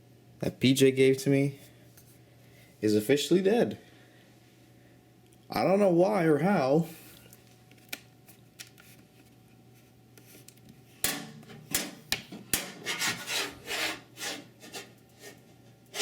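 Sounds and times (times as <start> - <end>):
rubbing and scraping strokes: 12.6 - 16.0.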